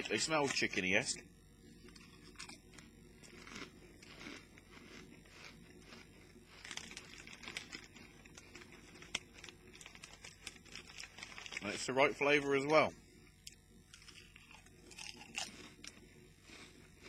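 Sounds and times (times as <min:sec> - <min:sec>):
crisps being chewed: 0:00.0 - 0:00.8, 0:01.8 - 0:11.8, 0:13.4 - 0:17.0
crisp packet rustling: 0:05.4 - 0:11.8.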